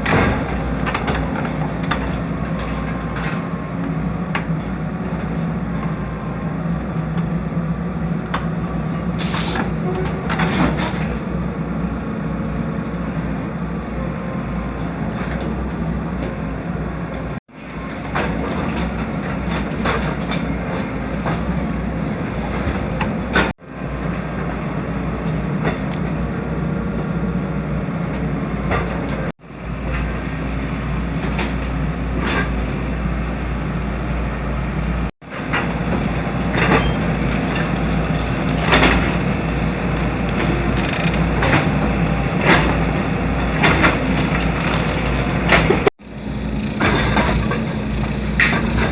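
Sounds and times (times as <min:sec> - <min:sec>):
diesel engine running under load: 0:00.0 - 0:48.9.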